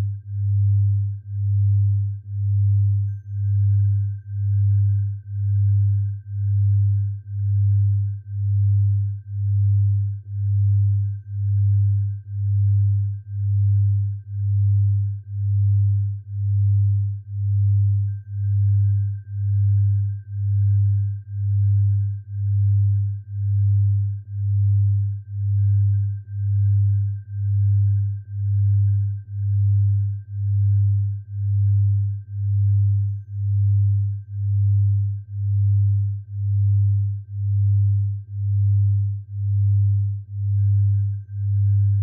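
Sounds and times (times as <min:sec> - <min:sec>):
deep pulsing pure tone: 0:00.0 - 0:42.0
faint steady high tone: 0:00.0 - 0:42.0.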